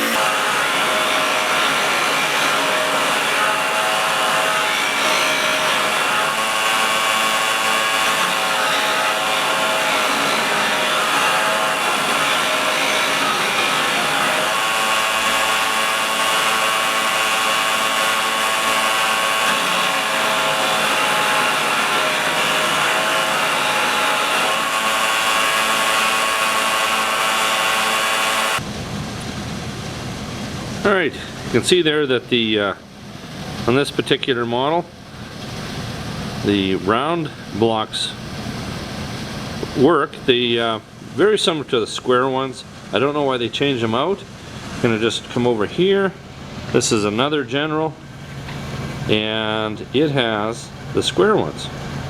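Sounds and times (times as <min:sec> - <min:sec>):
electric grinder whining: 0:00.0 - 0:28.6.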